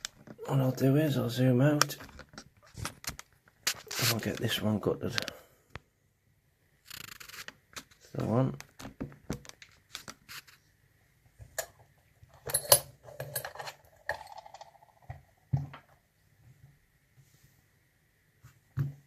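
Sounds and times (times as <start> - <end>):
metal tools clicking and clattering: 12.4 - 13.9.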